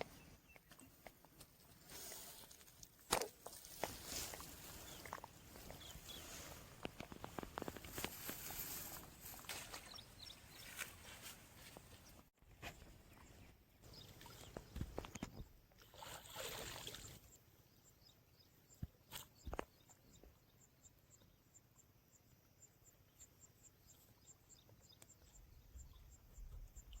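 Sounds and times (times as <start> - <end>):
rustling: 1.6 - 12.0.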